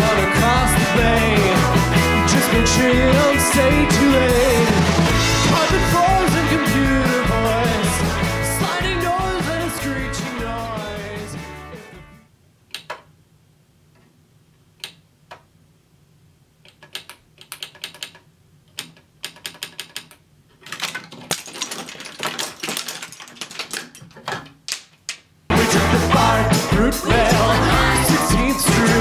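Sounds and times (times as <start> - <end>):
plastic bricks clicking: 16.7 - 25.2.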